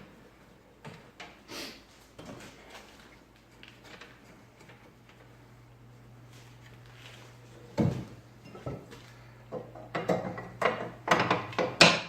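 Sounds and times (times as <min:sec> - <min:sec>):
steady low hum: 0:00.0 - 0:11.9
objects knocking on workbench: 0:07.8 - 0:08.8.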